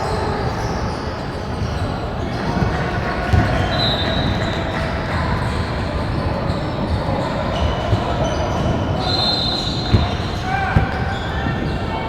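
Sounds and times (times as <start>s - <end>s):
murmur of voices in hall: 0.0s - 12.0s
sneakers squeaking on court: 0.1s - 12.0s
basketball dribbling thuds: 2.6s - 11.9s.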